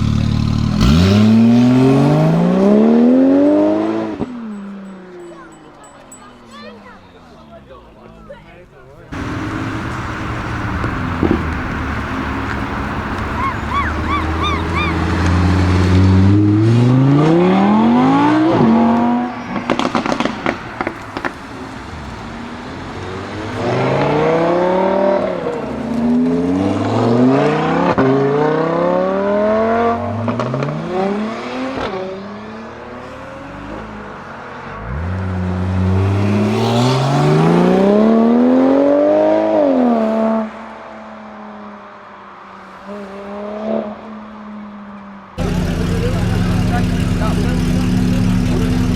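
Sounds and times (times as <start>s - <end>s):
car engine accelerating hard: 0.0s - 4.5s, 9.1s - 40.7s, 45.4s - 48.9s
exhaust crackles and pops: 9.2s - 16.1s, 19.5s - 23.0s.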